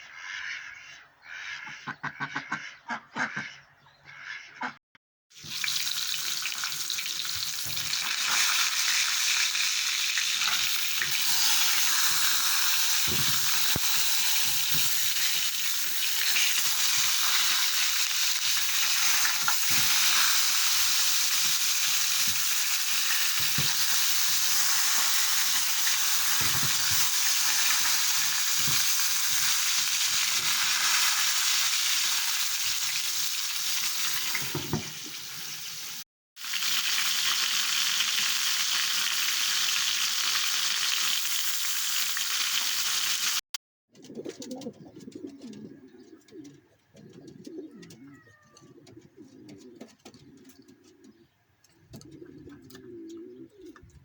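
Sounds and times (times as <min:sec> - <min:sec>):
food sizzling in hot oil: 0:05.3 - 0:43.4
pigeons cooing: 0:43.9 - 0:54.0.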